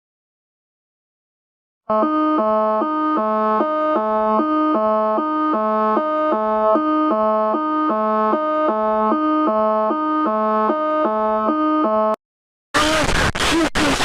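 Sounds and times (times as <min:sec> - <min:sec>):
two-note electronic alert tone: 0:01.9 - 0:12.2.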